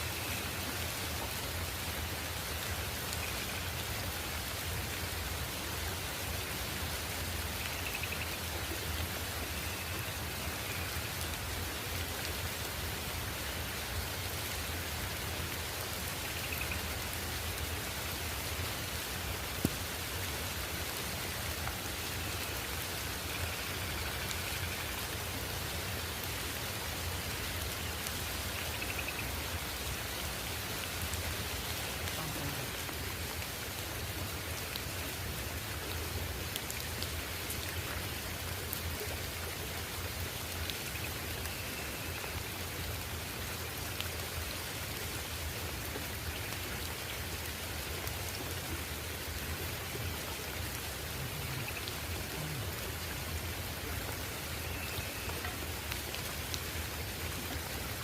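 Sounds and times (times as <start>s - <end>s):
steady rain falling: 0.0s - 58.0s
individual raindrop hits: 19.6s - 19.8s.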